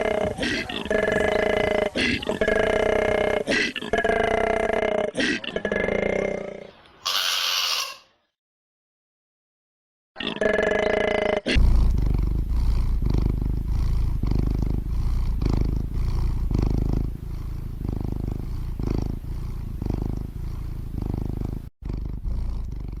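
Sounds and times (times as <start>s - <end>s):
cat purring: 0.0s - 3.6s, 11.5s - 23.0s.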